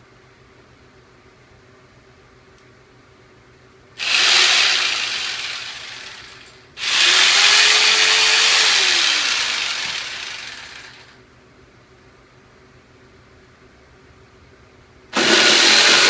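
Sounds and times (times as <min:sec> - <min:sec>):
electric jigsaw running: 0:04.0 - 0:11.2, 0:15.2 - 0:16.0.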